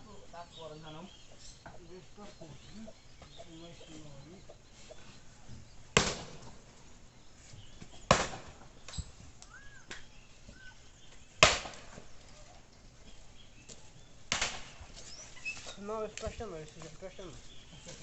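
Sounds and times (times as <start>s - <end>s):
axe chopping firewood: 6.0s - 6.5s, 8.1s - 9.0s, 11.4s - 12.0s, 14.3s - 14.8s.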